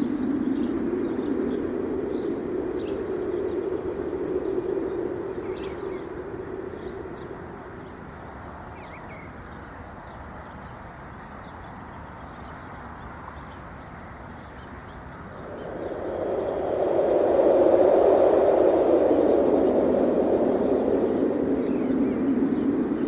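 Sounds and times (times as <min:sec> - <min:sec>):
small birds chirping: 0:00.0 - 0:17.8, 0:18.4 - 0:23.0
wind noise: 0:00.0 - 0:23.0
low rushing: 0:15.3 - 0:23.0.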